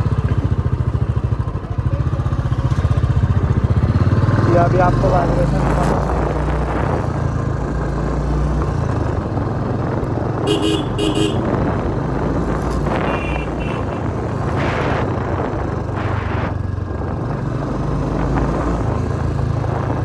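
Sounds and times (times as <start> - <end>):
motorcycle engine running: 0.0 - 20.0
road and wind noise: 0.0 - 20.0
horn beeps: 10.5 - 11.5, 12.9 - 14.6.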